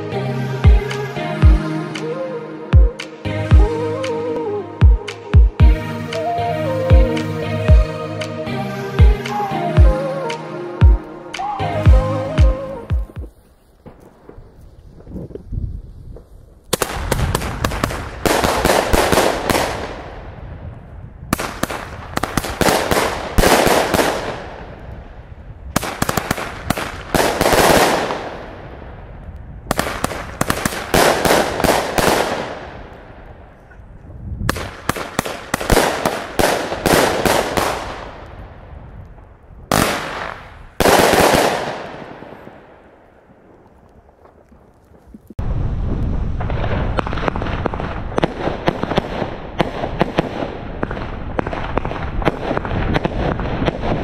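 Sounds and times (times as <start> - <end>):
fireworks cake firing volleys: 13.0 - 33.8, 34.4 - 45.4, 46.2 - 54.0.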